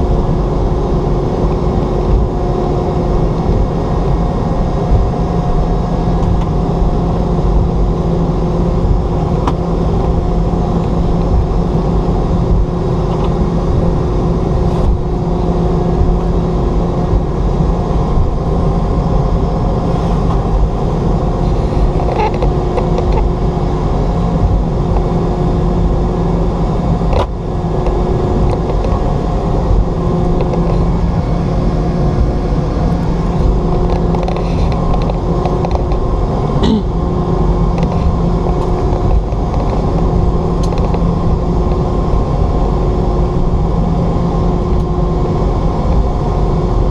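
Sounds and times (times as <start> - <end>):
aircraft cabin engine hum: 0.0 - 46.9.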